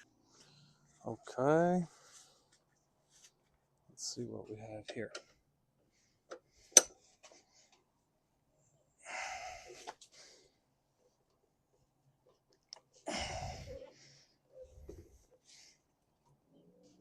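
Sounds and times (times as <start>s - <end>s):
person exhaling with strain: 13.0s - 14.0s.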